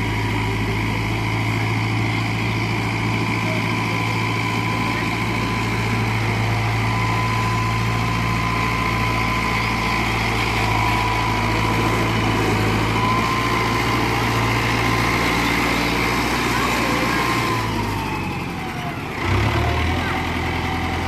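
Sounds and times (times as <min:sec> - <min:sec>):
tractor diesel engine running: 0:00.0 - 0:21.0.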